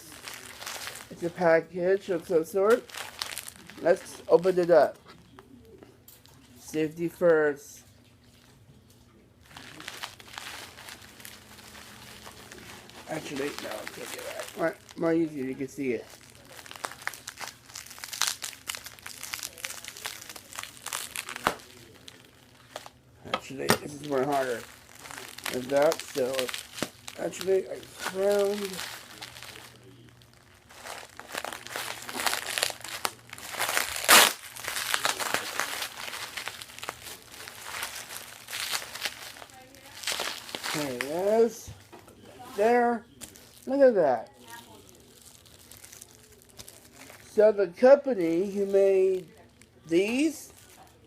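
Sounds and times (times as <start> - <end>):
packaging crinkling: 0.0 - 1.4, 2.0 - 5.0, 9.4 - 41.8, 42.4 - 47.4, 48.3 - 51.0
wrapping rustling: 0.0 - 5.3, 9.4 - 51.0
wrapping sharp rip: 16.3 - 22.9, 23.5 - 30.0, 30.8 - 41.5.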